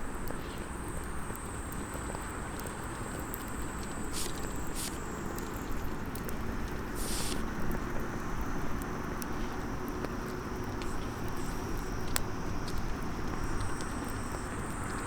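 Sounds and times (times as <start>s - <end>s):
wood fire crackling: 0.0s - 15.0s
fire hissing: 3.2s - 15.0s.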